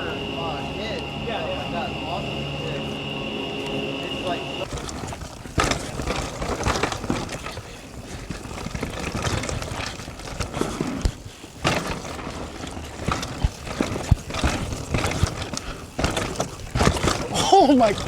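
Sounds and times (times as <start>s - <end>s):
bike knocks and clatters: 4.6s - 18.0s.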